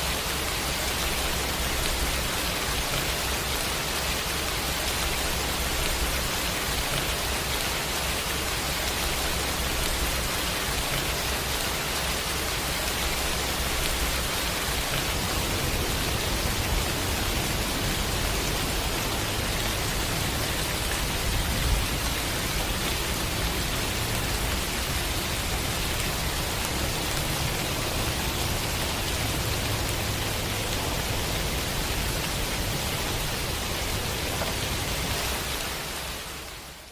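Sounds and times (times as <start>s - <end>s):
heavy rainfall: 0.0s - 36.9s.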